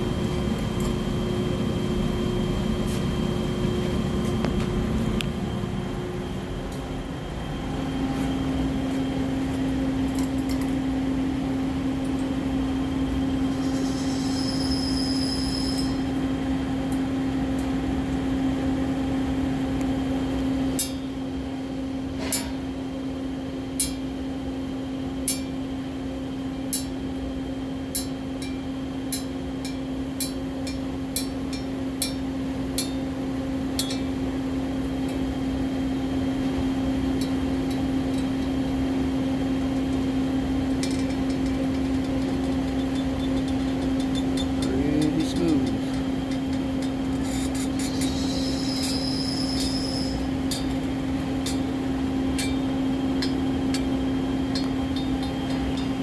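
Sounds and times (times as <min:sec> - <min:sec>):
welding hum: 0:29.6 - 0:56.0.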